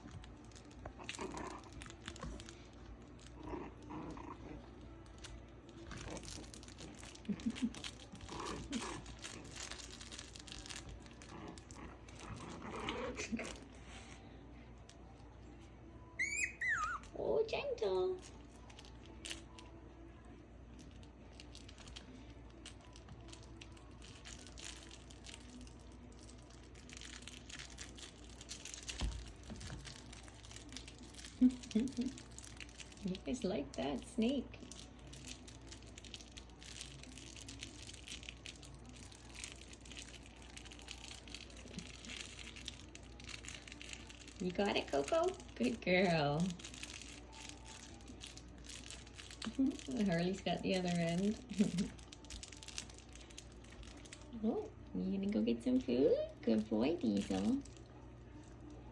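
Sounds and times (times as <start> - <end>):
soft rustling and crinkling: 0.0 - 58.9
puppies yelping and growling: 16.2 - 17.2.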